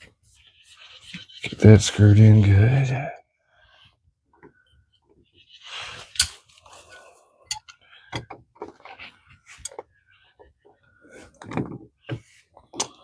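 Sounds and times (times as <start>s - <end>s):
pipe fitting clicks and scrapes: 5.9s - 11.8s, 12.6s - 13.0s.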